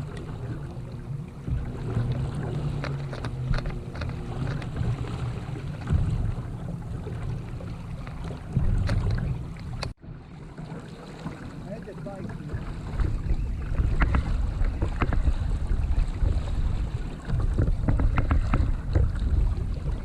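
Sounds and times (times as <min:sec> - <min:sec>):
wind rumbling on microphone: 0:00.0 - 0:20.0
small knocks and clicks: 0:02.8 - 0:04.8, 0:17.5 - 0:19.2.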